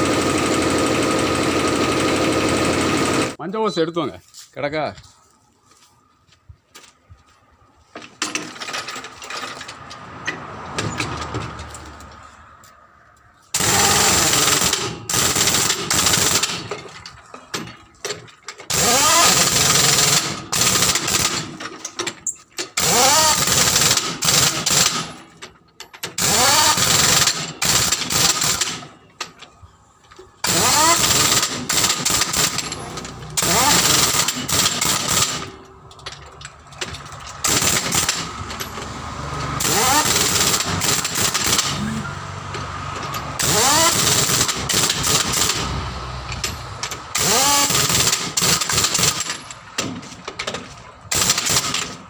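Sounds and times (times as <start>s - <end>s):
power tool running in bursts: 0.0s - 3.4s, 13.6s - 16.6s, 18.7s - 21.4s, 22.8s - 25.0s, 26.2s - 28.8s, 30.4s - 32.8s, 33.4s - 35.5s, 39.6s - 41.8s, 43.4s - 45.8s, 47.1s - 49.3s.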